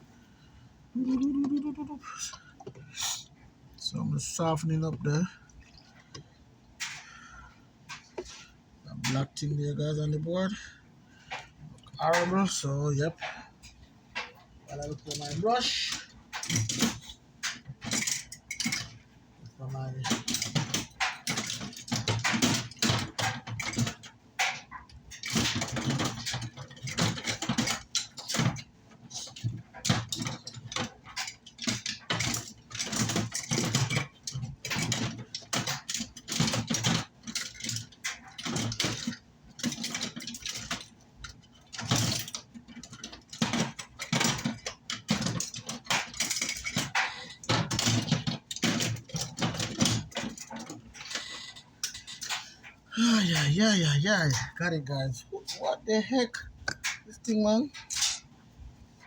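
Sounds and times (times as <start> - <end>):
tools clattering on a workbench: 3.8 - 55.7, 56.3 - 58.3.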